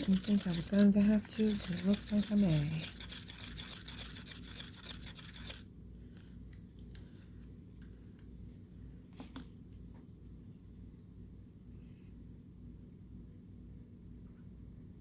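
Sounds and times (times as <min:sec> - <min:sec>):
small tools scratching and clicking: 0:00.0 - 0:05.6
low steady hum: 0:00.0 - 0:15.0.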